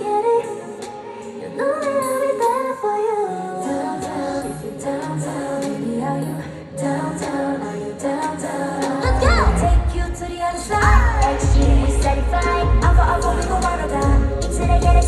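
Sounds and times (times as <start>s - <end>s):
live pop music: 0.0s - 15.0s
woman singing: 0.0s - 15.0s
low bass line: 10.8s - 15.0s.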